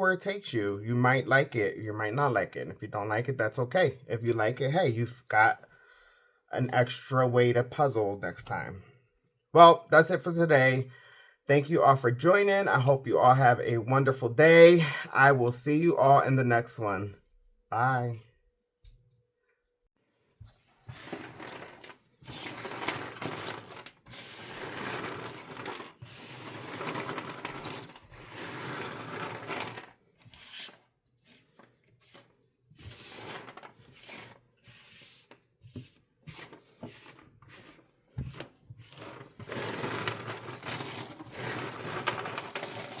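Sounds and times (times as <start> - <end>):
puzzle pieces rattling: 21.1 - 30.0, 38.9 - 43.0.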